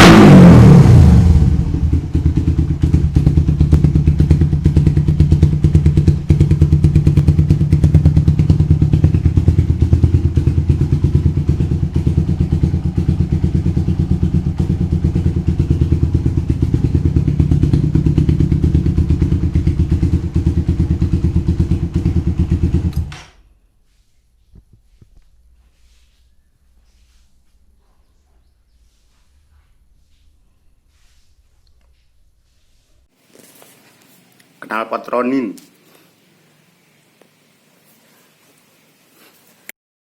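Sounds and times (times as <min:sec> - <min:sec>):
motorcycle engine idling: 0:01.4 - 0:23.1.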